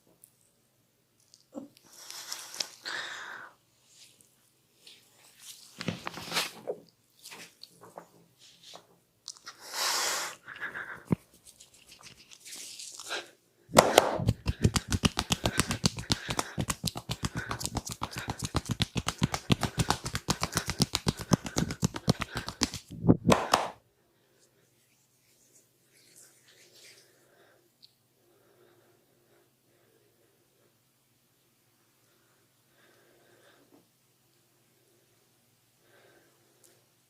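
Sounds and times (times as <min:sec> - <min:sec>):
soft rubbing: 0:11.0 - 0:13.1
hands slapping head: 0:13.7 - 0:23.8.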